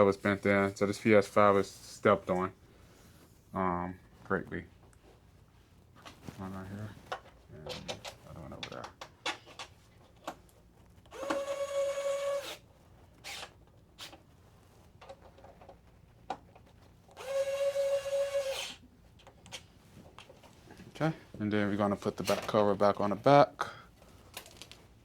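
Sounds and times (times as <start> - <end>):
electric screwdriver whining: 11.1 - 12.6, 17.2 - 18.8.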